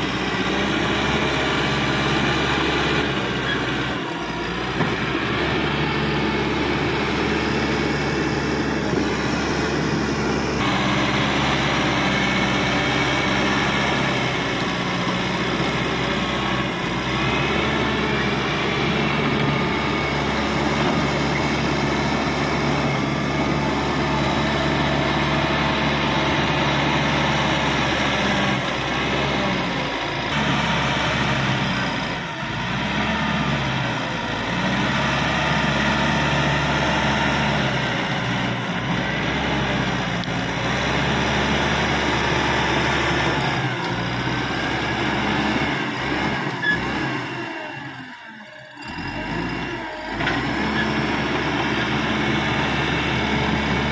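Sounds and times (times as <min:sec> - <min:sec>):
bulldozer diesel engine running: 0:00.0 - 0:53.9
machine grinding and clatter: 0:03.0 - 0:29.0.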